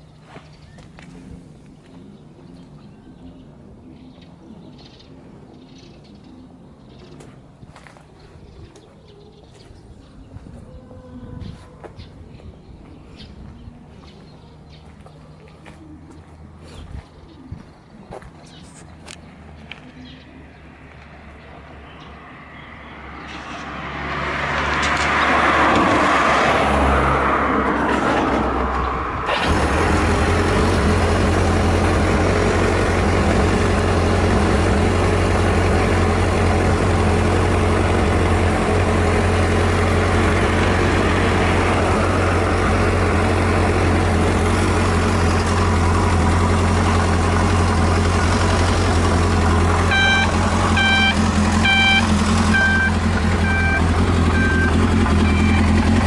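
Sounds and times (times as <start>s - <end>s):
motorcycle engine starting and idling: 27.7s - 56.0s
repeating electronic beep: 49.9s - 55.7s.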